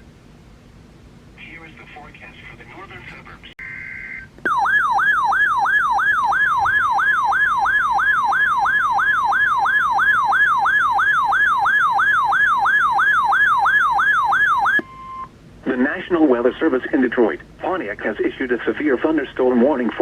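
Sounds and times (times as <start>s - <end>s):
siren-like alert tone sweep: 3.6s - 15.3s
steady high tone: 3.6s - 15.3s.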